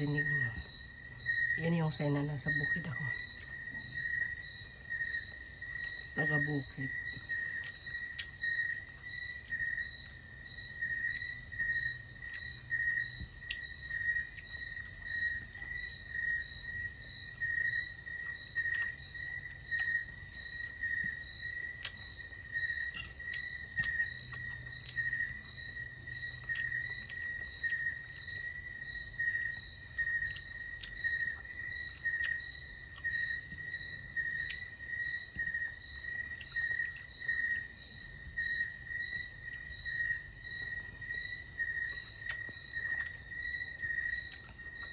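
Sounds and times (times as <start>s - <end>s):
insects trilling: 0.0s - 44.9s.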